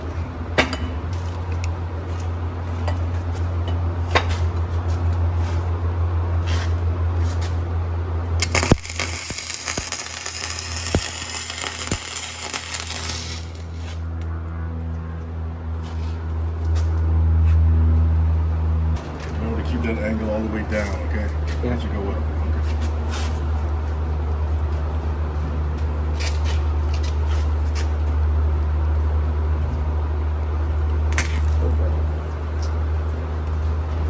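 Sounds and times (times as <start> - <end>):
steady low hum: 0.0 - 34.0
welding arc crackling: 8.3 - 14.3, 31.1 - 31.6
sharp crack: 8.4 - 14.0, 31.1 - 31.8.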